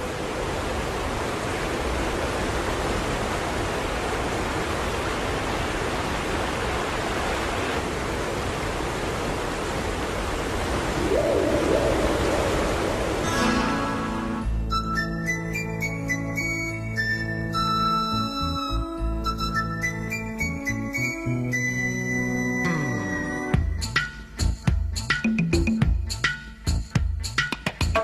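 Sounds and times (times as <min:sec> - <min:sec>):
steady rushing noise: 0:00.0 - 0:14.4.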